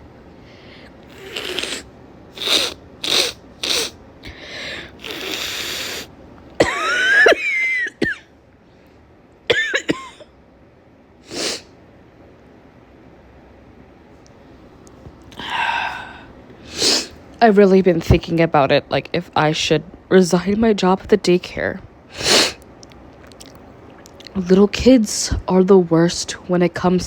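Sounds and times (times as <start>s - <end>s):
woman coughing: 6.6s - 8.3s, 9.5s - 10.3s.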